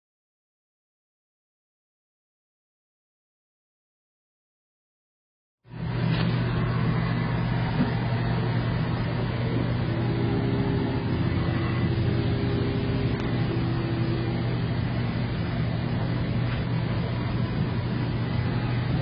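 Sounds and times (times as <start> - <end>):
high steady tone: 5.7 - 19.0
milling machine hum: 5.7 - 19.0.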